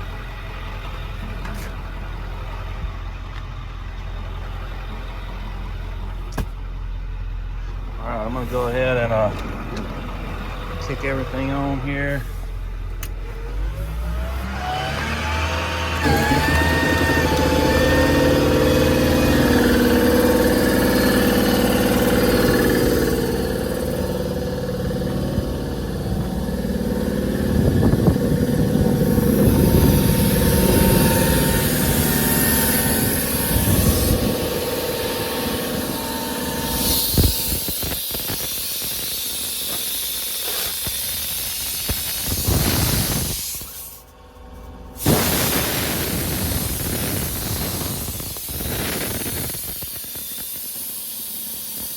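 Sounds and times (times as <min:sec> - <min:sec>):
diesel engine running: 0:00.0 - 0:51.9
air compressor pumping: 0:13.9 - 0:51.9
air hissing from a leaking hose: 0:28.9 - 0:36.0, 0:36.6 - 0:44.1, 0:45.0 - 0:51.9.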